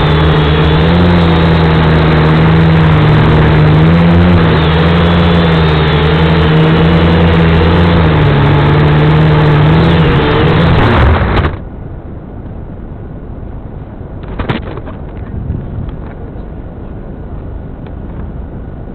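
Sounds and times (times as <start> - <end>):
drone motors whining: 0.0 - 11.7.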